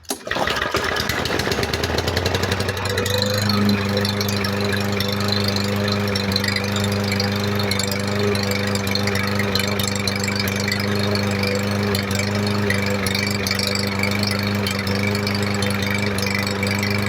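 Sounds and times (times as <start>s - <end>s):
lawn mower engine running: 0.0s - 17.0s.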